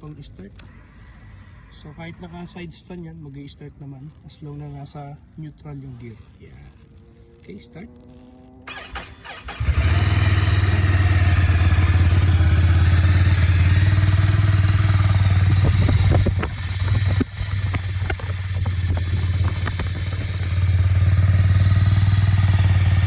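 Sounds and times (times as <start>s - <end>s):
starter motor cranking: 0.4s - 2.8s, 8.7s - 23.0s
motorcycle engine idling: 8.7s - 23.0s.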